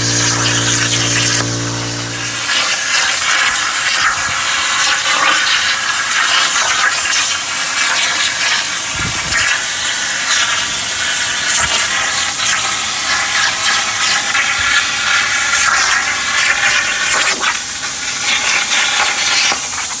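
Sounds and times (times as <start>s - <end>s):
plasma cutter hissing: 0.0s - 3.0s.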